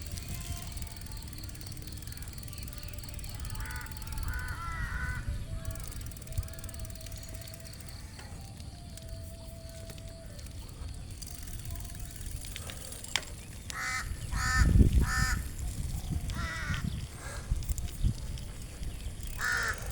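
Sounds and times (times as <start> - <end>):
crow cawing: 3.5 - 5.7, 13.7 - 15.6, 16.3 - 17.6, 19.4 - 19.9.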